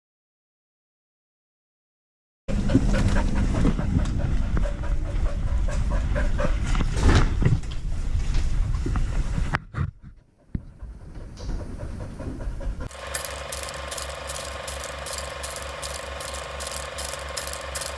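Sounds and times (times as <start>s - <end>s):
dog panting hard: 2.6s - 7.0s, 8.8s - 17.9s.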